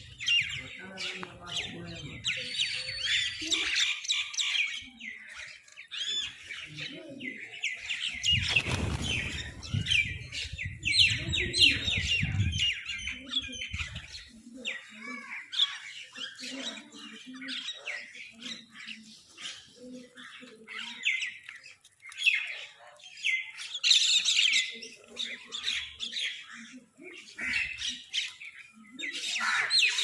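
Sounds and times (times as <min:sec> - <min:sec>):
crows calling harshly: 0:29.4 - 0:30.0.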